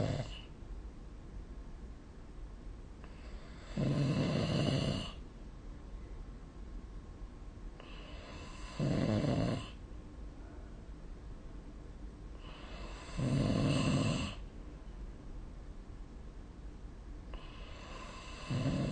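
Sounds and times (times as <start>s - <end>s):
person snoring: 0.0s - 0.5s, 3.1s - 5.2s, 7.8s - 9.8s, 12.4s - 14.4s, 17.4s - 18.9s
quiet breathing: 0.0s - 0.6s, 3.0s - 5.2s, 7.7s - 11.2s, 12.3s - 14.5s, 17.2s - 18.9s.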